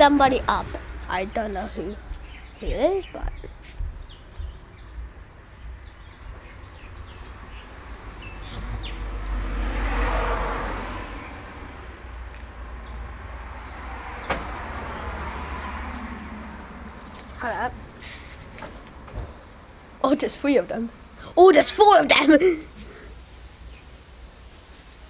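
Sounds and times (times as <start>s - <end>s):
car passing by: 6.5s - 20.0s.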